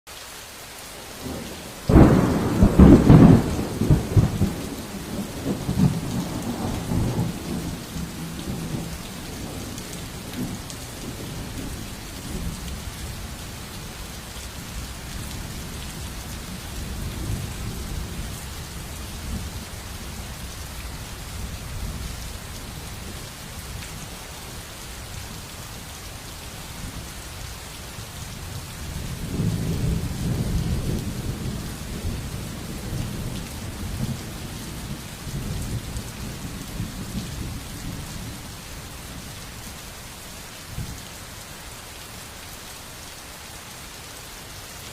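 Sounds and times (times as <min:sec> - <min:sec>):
steady rain: 0:00.1 - 0:44.9
thunder rolling: 0:01.9 - 0:09.8.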